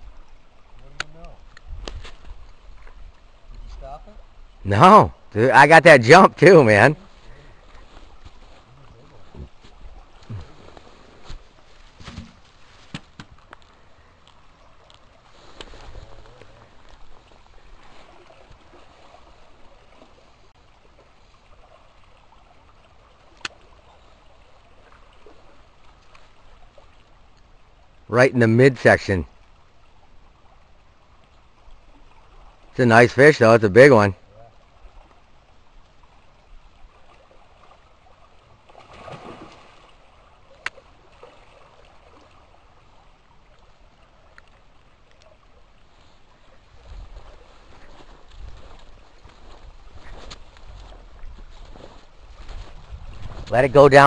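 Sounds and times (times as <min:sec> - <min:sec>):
river water rushing: 0:04.2 - 0:50.1
water splash: 0:36.8 - 0:43.0.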